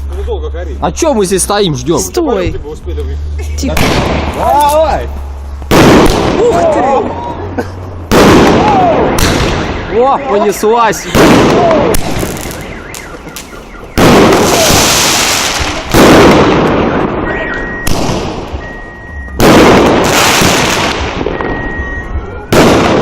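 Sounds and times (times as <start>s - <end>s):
fireworks bangs: 3.7s - 7.2s, 8.0s - 18.7s, 19.3s - 23.0s
fireworks crackling: 8.0s - 17.3s, 19.3s - 21.6s.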